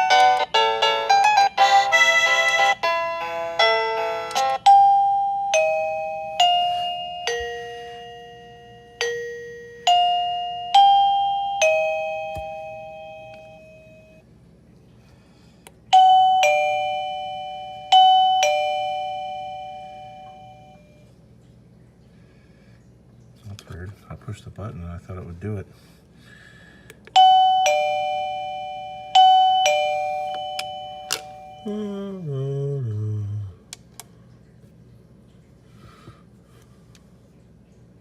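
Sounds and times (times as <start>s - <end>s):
ding-dong doorbell chimes: 4.4s - 14.2s, 15.9s - 21.1s, 27.2s - 31.9s.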